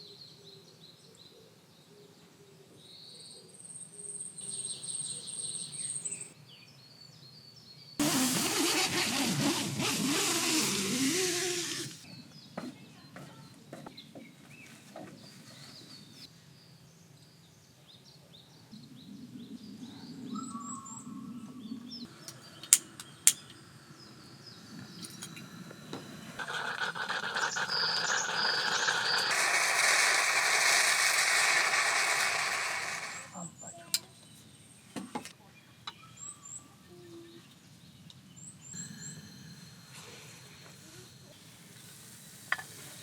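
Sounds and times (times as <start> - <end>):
small birds chirping: 10.5 - 38.8
loud noise: 22.1 - 33.4
sharp clicks: 22.2 - 23.6.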